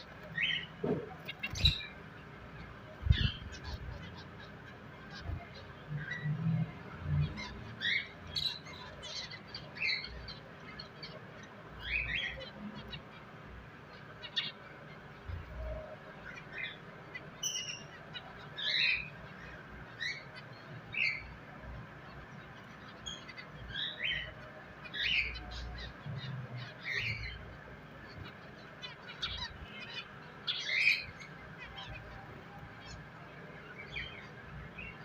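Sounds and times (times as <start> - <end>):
finches chirping: 0.0 - 35.0.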